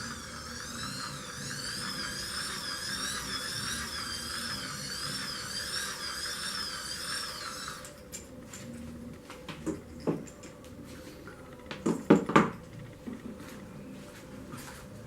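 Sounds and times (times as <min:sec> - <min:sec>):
hand-cranked motor whirring: 0:00.0 - 0:08.6.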